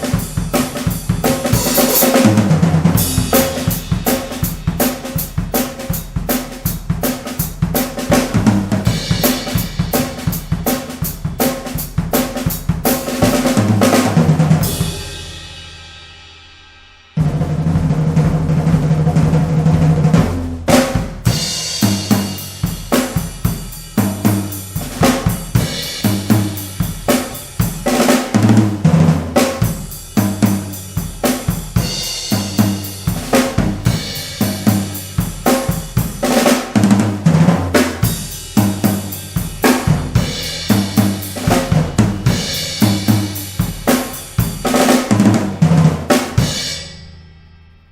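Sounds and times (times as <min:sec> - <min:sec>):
drum kit groove: 0:00.0 - 0:47.4.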